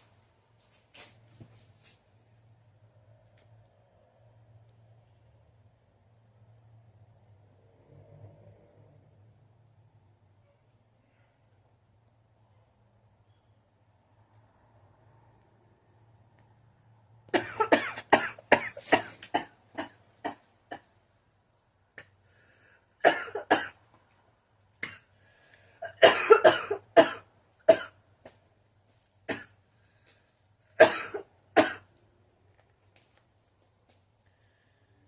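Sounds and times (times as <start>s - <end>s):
woman coughing: 17.4s - 20.8s, 23.0s - 23.8s, 25.8s - 27.9s, 30.8s - 31.9s.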